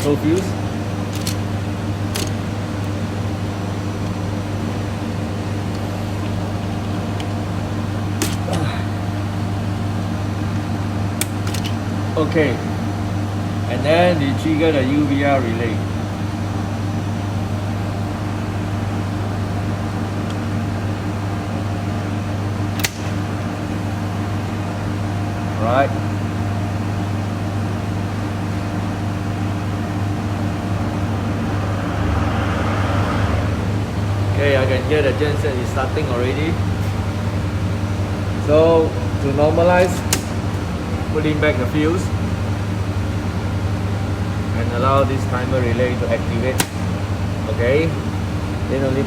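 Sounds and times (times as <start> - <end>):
switchgear electrical hum: 0.0 - 49.0
sharp click: 22.8 - 23.2, 39.8 - 40.5, 46.6 - 46.9.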